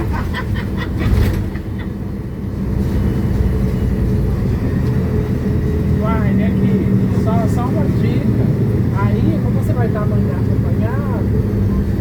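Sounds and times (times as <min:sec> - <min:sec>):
bus engine rumble: 0:00.0 - 0:12.0.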